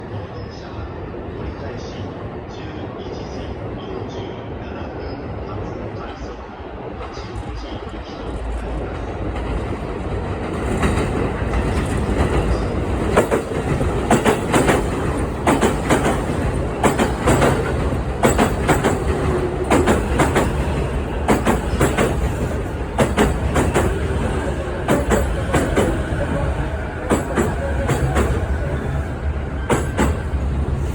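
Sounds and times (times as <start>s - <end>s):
electric train rumble: 0.0s - 30.9s
wheels clacking on rail joints: 9.2s - 30.5s.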